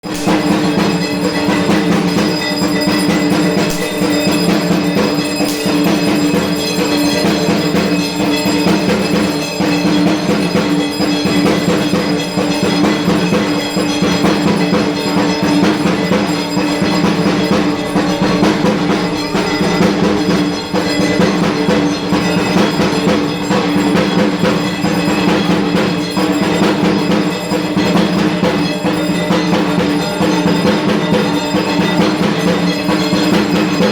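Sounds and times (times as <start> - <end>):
barrel drum beaten with sticks: 0.0 - 33.9
steady ringing tone: 0.0 - 33.9.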